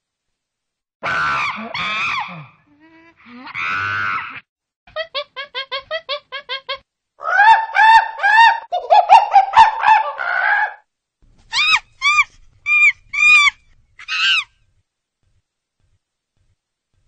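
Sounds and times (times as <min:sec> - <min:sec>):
bird calling: 0:11.5 - 0:14.6.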